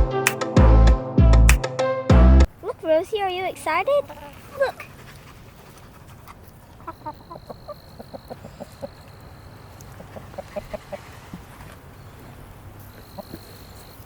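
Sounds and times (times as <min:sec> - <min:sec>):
hens clucking: 0:03.6 - 0:14.0.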